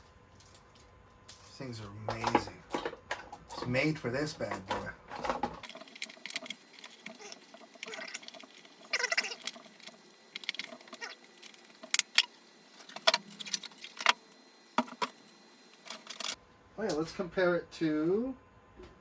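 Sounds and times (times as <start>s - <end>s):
battery packs handled: 5.6s - 16.4s.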